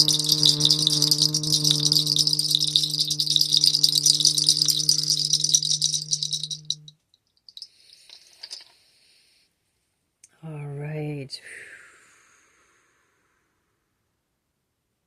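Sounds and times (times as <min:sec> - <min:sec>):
electric device humming and rattling: 0:00.0 - 0:06.9.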